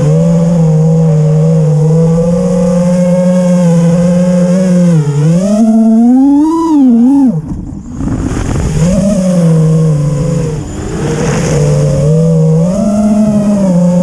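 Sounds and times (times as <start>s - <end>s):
quadcopter motors whining: 0.0s - 14.0s
rush of noise: 0.0s - 14.0s.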